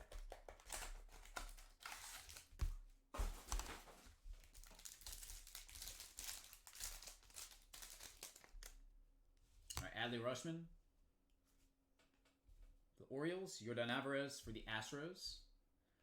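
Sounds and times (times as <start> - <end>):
cards being handled: 0.0 - 8.7
plastic packaging crinkling: 0.0 - 8.8.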